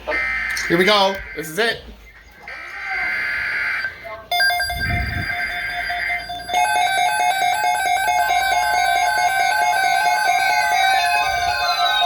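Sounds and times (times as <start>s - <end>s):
two-pitch electronic beeping: 4.3s - 12.0s.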